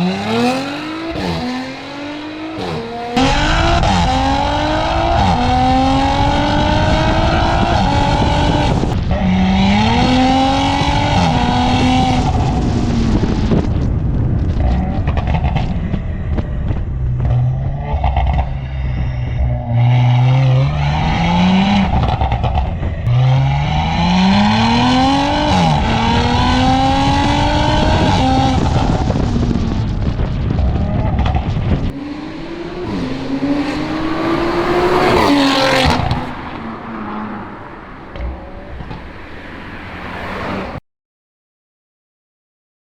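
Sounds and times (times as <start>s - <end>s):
exhaust backfire burst: 0.0s - 16.0s
car engine accelerating hard: 0.0s - 40.8s.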